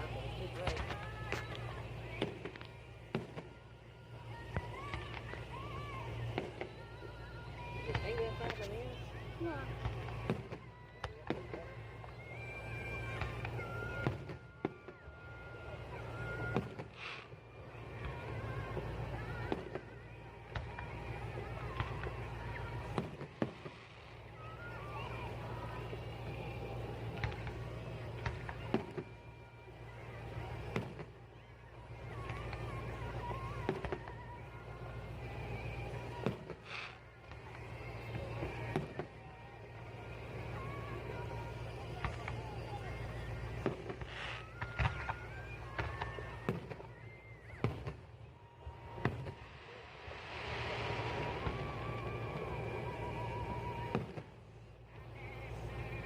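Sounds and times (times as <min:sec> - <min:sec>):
distant fireworks bangs: 0:00.0 - 0:56.0
steady low rumble: 0:48.0 - 0:56.0
steady hiss: 0:48.8 - 0:56.0.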